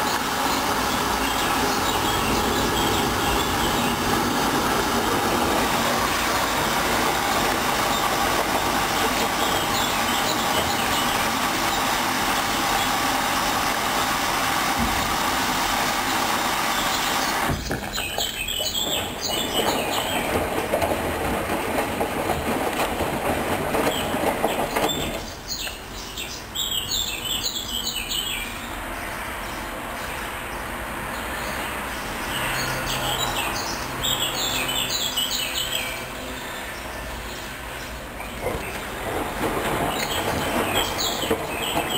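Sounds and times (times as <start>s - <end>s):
washing machine drum turning: 38.3s - 41.9s.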